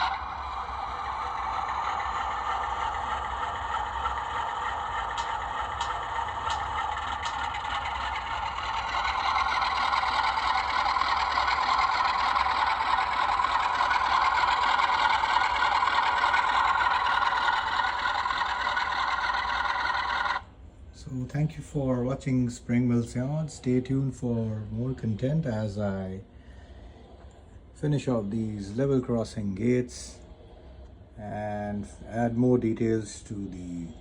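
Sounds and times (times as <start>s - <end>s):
model train motor whirring: 0.0s - 20.6s.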